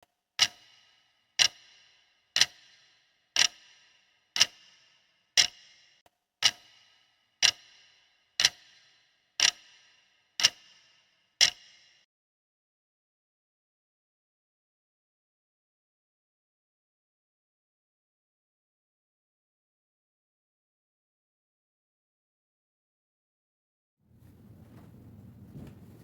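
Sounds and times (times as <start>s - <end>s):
clock ticking: 0.4s - 11.9s.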